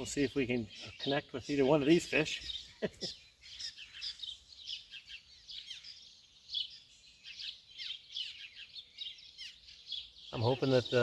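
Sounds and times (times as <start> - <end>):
birds chirping and singing: 0.0 - 11.0.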